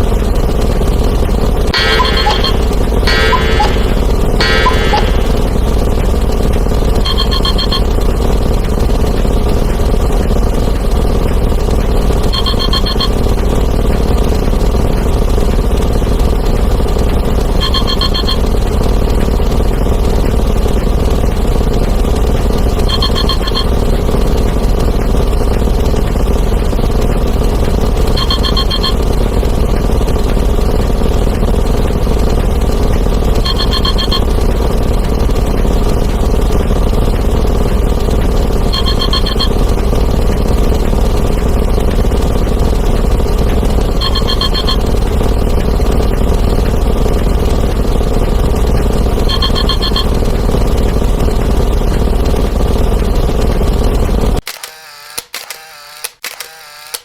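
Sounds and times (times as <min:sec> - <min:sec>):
phones and alarm clocks ringing: 0:01.8 - 0:05.7, 0:07.1 - 0:07.9, 0:12.4 - 0:13.1, 0:17.6 - 0:18.4, 0:22.9 - 0:23.7, 0:28.2 - 0:29.0, 0:33.5 - 0:34.4, 0:38.8 - 0:39.6, 0:44.0 - 0:44.9, 0:49.3 - 0:50.1
short ringing tone: 0:01.8 - 0:05.8, 0:07.1 - 0:07.9, 0:12.4 - 0:13.1, 0:17.6 - 0:18.4, 0:38.8 - 0:39.5, 0:44.0 - 0:44.8.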